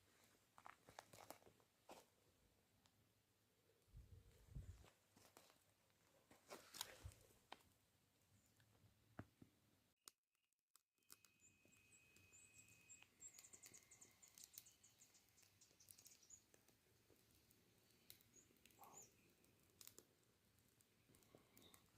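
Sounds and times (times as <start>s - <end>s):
high-pitched bird chirps: 11.3s - 15.2s.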